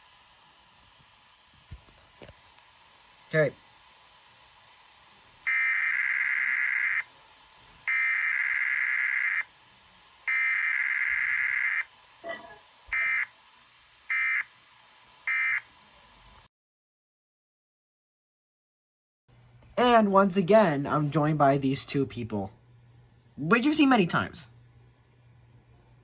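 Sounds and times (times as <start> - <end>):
harsh digital data tones: 5.5 - 7.1, 7.9 - 9.5, 10.3 - 13.4, 14.1 - 14.5, 15.3 - 15.7.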